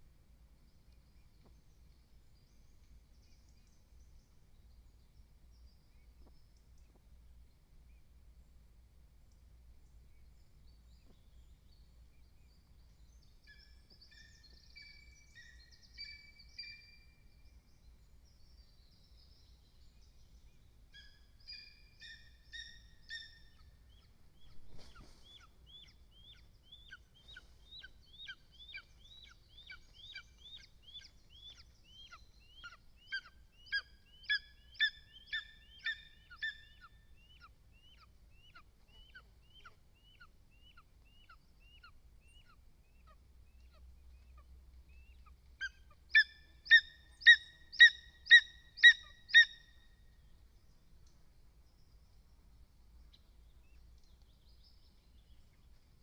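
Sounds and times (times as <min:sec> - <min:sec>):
eagle yelping calls: 0:45.6 - 0:49.7.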